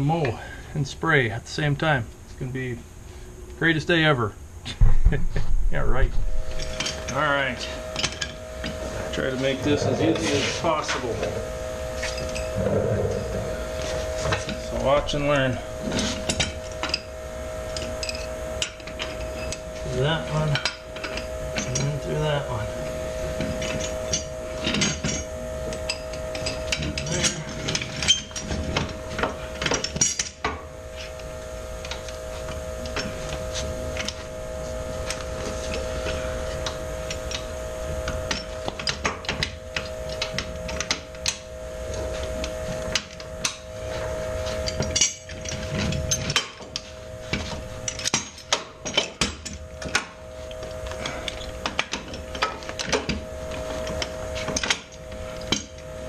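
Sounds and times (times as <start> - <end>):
steady whine: 0.0 - 56.0
metal clanks and scrapes: 6.1 - 11.4, 12.0 - 17.1, 23.4 - 31.2, 42.0 - 50.1.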